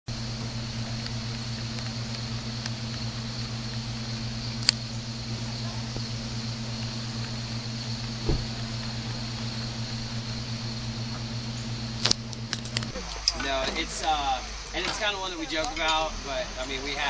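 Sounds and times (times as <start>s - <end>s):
low machine hum: 0.1s - 17.0s
short thump: 8.2s - 8.6s.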